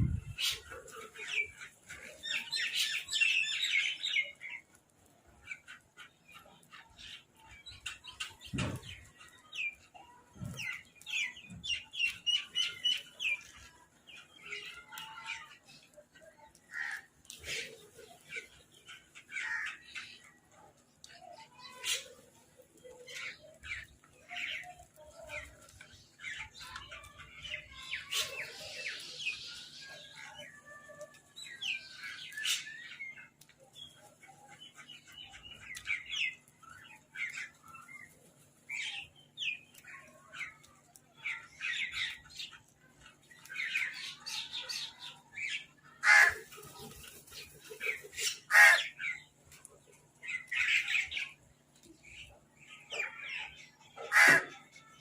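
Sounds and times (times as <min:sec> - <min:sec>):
crows cawing and squawking: 0:16.7 - 0:17.7, 0:19.3 - 0:20.1, 0:46.0 - 0:46.5, 0:48.1 - 0:49.2, 0:54.0 - 0:54.6.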